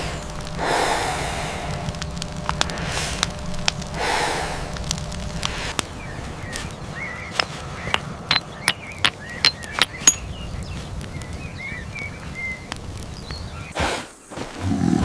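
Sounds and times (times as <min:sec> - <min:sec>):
low rumble: 0:00.0 - 0:08.4
small birds chirping: 0:00.0 - 0:15.0.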